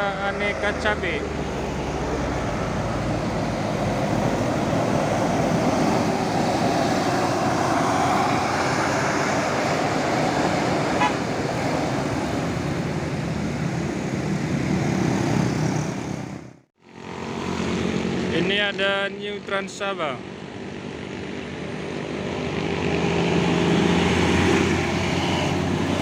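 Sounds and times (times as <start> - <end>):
bus engine running: 0.0 - 17.2.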